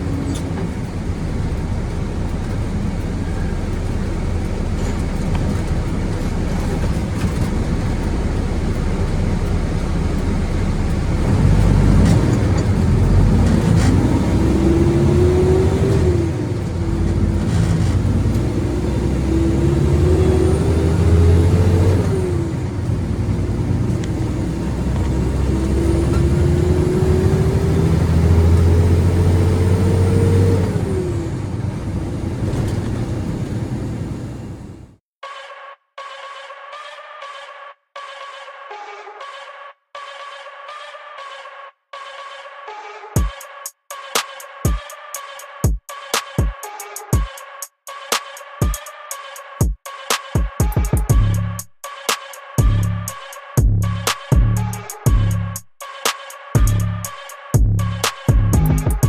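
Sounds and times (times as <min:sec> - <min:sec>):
diesel truck engine accelerating: 0:00.0 - 0:35.0, 0:51.1 - 0:51.7, 0:52.6 - 0:55.6, 0:56.6 - 0:59.0.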